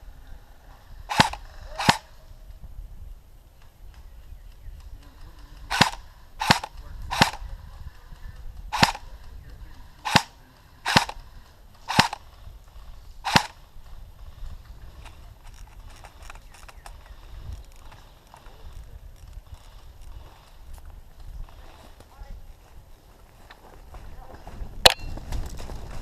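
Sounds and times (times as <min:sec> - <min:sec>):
airsoft rifle shots: 0:01.1 - 0:02.2, 0:05.6 - 0:07.6, 0:08.6 - 0:09.4, 0:10.0 - 0:12.5, 0:13.2 - 0:13.7.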